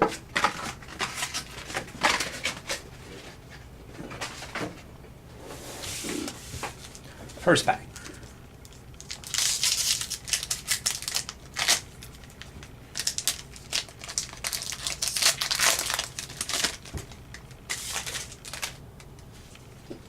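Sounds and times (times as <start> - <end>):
wrapper tearing and crackling: 8.7 - 18.8.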